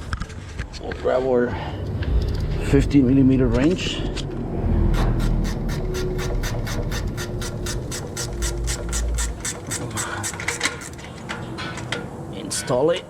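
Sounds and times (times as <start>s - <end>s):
ratcheting wrench clicking: 5.0s - 12.0s.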